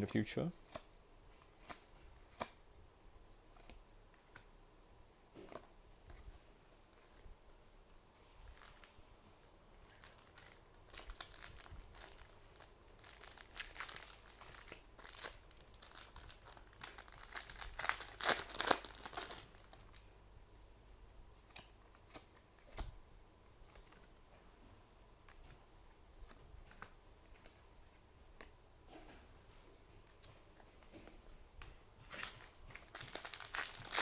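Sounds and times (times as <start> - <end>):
wrapper crinkling and tearing: 8.5 - 8.9, 9.9 - 20.1, 32.1 - 34.0.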